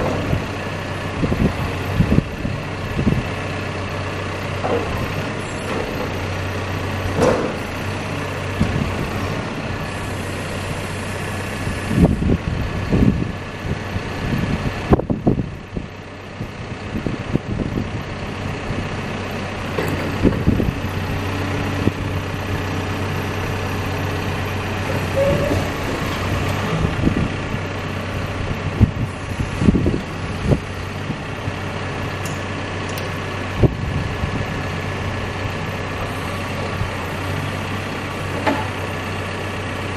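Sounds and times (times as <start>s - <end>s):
machine clunks and knocks: 0.0s - 0.5s, 4.6s - 6.3s, 7.0s - 9.1s, 19.7s - 20.6s, 38.3s - 38.9s
diesel engine running: 0.0s - 39.9s.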